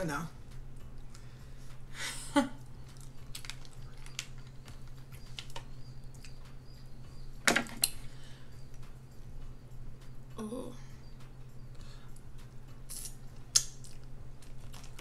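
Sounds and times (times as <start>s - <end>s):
steady low hum: 0.0s - 15.0s
crab shell cracking and chewing: 2.8s - 6.5s, 12.9s - 15.0s.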